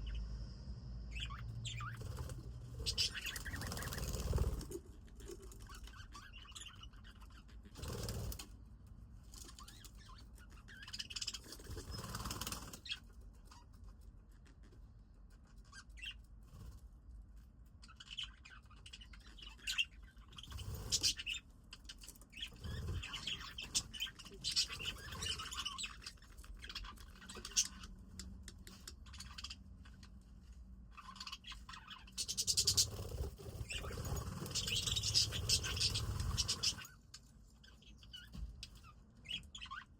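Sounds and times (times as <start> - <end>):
budgies chirping: 1.1 - 8.4, 9.3 - 13.8, 15.3 - 16.3, 17.8 - 30.2, 30.9 - 39.9
rustles and wing flaps: 2.0 - 4.9, 32.4 - 36.9.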